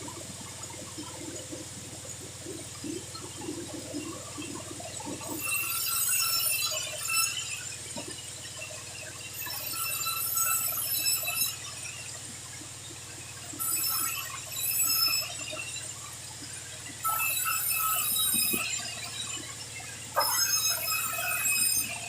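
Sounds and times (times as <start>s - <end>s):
saw blade cutting wood whine: 2.8s - 12.1s, 13.5s - 15.9s, 16.8s - 22.0s
saw motor hum: 16.9s - 22.0s.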